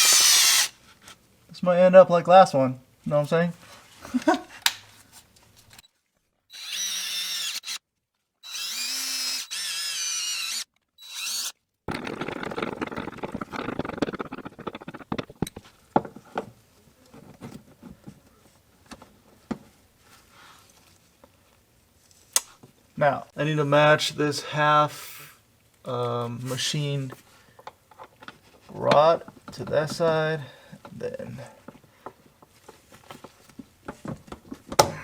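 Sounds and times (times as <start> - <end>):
power drill whining: 0.0 - 0.8, 6.5 - 7.8, 8.4 - 15.6
rough scraping: 10.4 - 15.8.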